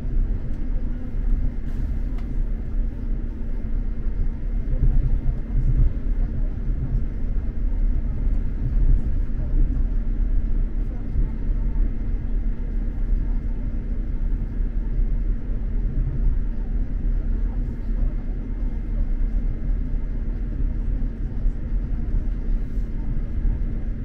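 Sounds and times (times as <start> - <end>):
faint steady hum: 0.0 - 24.0
train interior rumble: 0.0 - 24.0.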